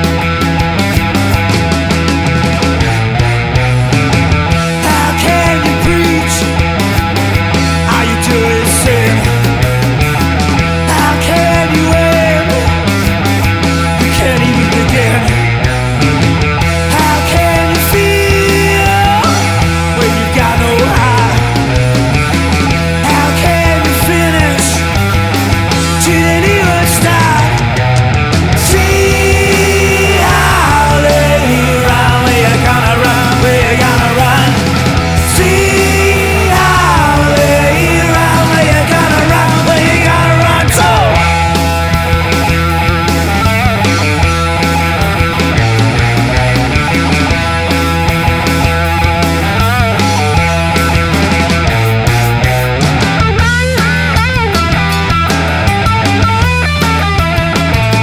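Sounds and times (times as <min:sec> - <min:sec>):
bending guitar lead line: 0:00.0 - 0:58.0
distorted electric guitar: 0:00.0 - 0:58.0
drum and bass groove: 0:00.0 - 0:58.0.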